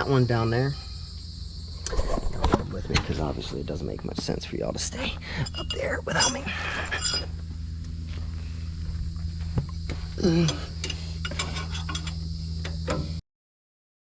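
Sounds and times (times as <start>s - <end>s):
steady low hum: 0.0s - 13.2s
hand tools clinking: 4.9s - 7.4s, 10.2s - 12.2s
person grunting: 10.2s - 10.8s.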